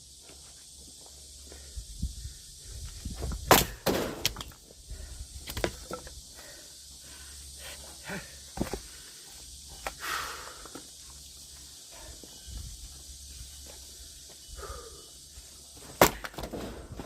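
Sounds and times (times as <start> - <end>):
axe splitting firewood: 3.4 - 4.6, 5.4 - 6.1, 15.8 - 17.0.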